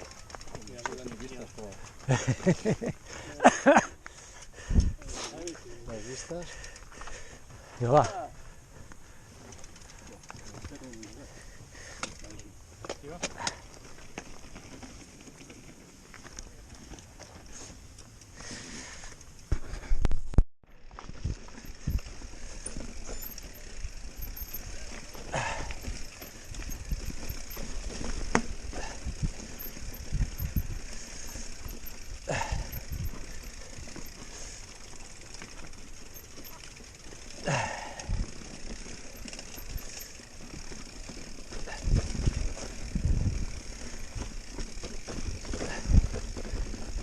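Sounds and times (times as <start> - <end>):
bike tyre noise on rough trail: 0.0 - 47.0
bike knocks and rattles: 20.8 - 47.0.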